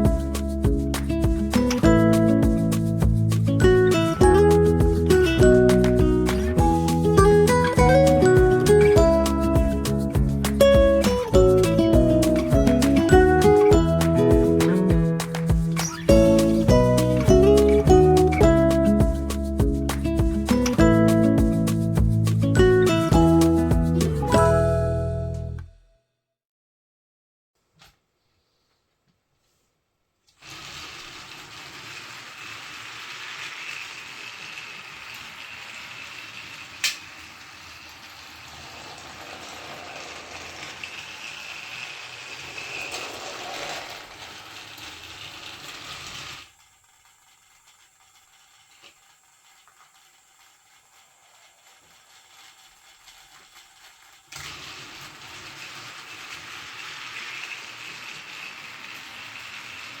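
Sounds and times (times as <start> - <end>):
toy train motor whirring: 2.7 - 18.4, 30.3 - 60.0.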